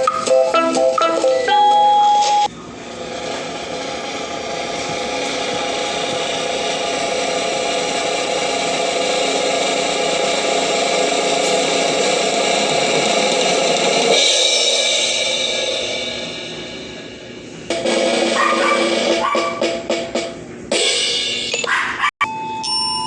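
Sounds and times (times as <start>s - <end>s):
snare drum roll: 17.7s - 21.4s.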